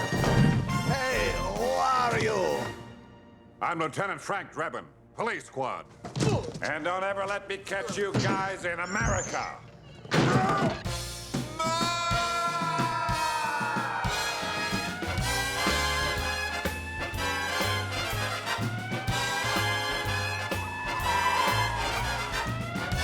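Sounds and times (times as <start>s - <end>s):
big band swing music: 0.0s - 3.4s, 10.4s - 23.0s.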